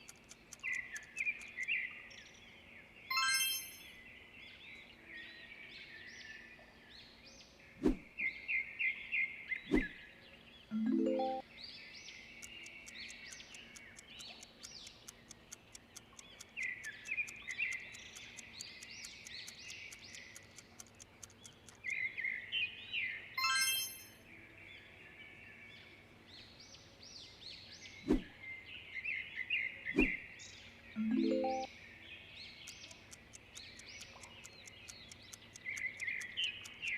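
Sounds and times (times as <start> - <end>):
sharp clicks: 0.0 - 1.8, 12.4 - 22.1, 32.6 - 36.9
faint ticks: 0.0 - 2.3, 12.3 - 22.1, 32.4 - 36.9
small birds chirping: 0.0 - 36.9.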